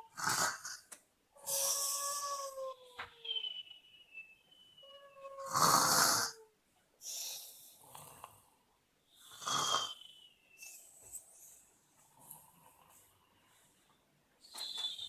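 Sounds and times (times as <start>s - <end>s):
person pretend snoring: 0.0s - 2.2s, 5.4s - 6.4s, 9.3s - 10.0s
thin whistle tones: 3.1s - 5.4s, 9.3s - 11.0s, 14.4s - 15.0s.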